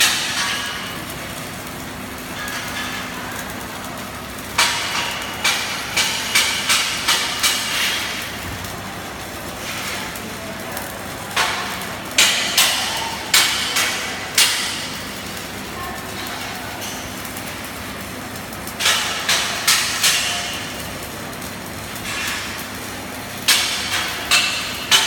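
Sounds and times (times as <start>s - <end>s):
workshop hum: 0.0s - 25.0s
hammer striking metal: 4.6s - 8.2s.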